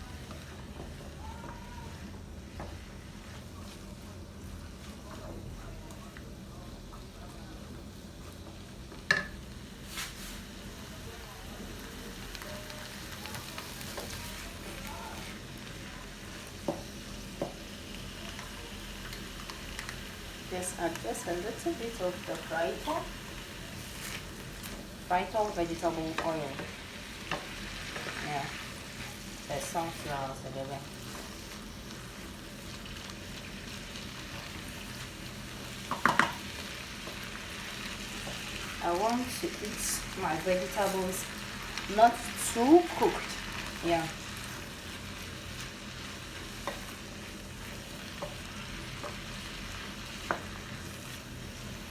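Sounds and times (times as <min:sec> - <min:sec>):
vegetables sizzling in a pan: 0:00.0 - 0:51.9
utensil knocking on a pan: 0:35.9 - 0:36.4.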